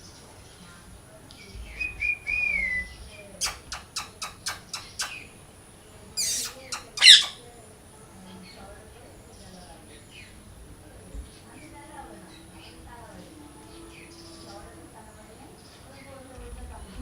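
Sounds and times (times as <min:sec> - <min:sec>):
parrot gliding whistle: 0:01.8 - 0:05.2, 0:06.2 - 0:07.4
parrot sharp chirps: 0:01.8 - 0:05.3, 0:06.2 - 0:07.4
parrot harsh screeches: 0:03.4 - 0:05.2, 0:06.2 - 0:07.4.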